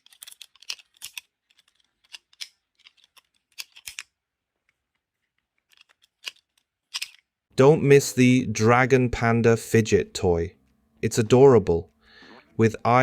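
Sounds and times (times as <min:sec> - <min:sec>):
plastic fidget toy clicking: 0:00.0 - 0:04.1.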